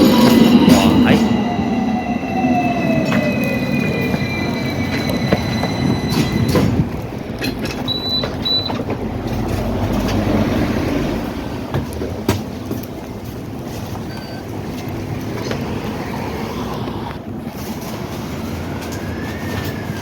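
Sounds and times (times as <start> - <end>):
high wheel squeal: 0.0 - 8.9, 13.7 - 20.0
tram motor whine: 0.0 - 20.0.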